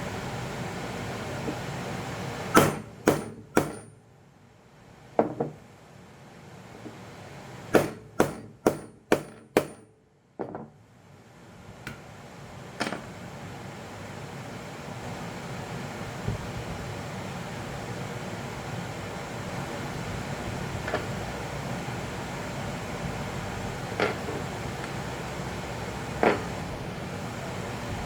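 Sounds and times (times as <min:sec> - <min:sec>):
hammer striking metal: 0:02.5 - 0:04.0, 0:07.8 - 0:09.9.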